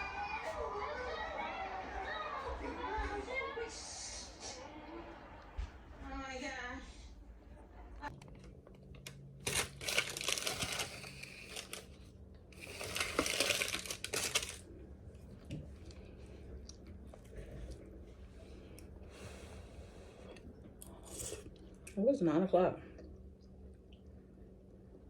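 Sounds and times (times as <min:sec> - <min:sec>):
packaging crinkling: 0:09.0 - 0:14.6.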